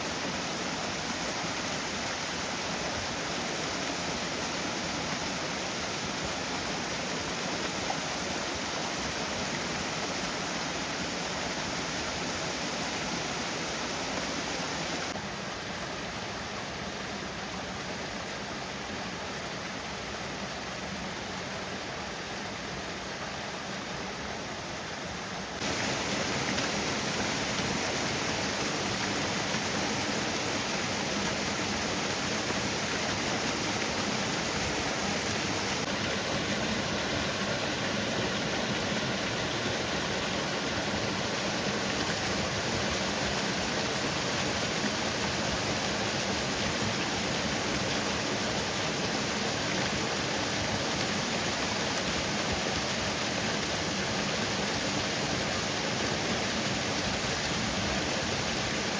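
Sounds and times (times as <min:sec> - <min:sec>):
waterfall pouring: 0:25.6 - 0:58.9.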